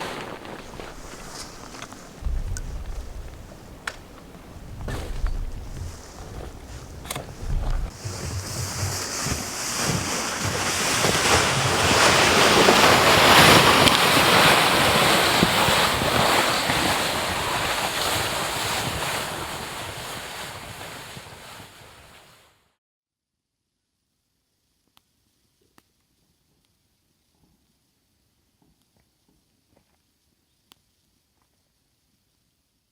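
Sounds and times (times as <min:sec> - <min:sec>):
wind gusting in a snowstorm: 0:00.0 - 0:22.4.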